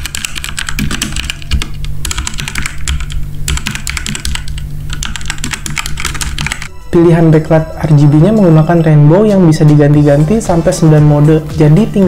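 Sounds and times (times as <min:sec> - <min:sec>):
fast typing on mechanical keyboard: 0:00.0 - 0:06.7.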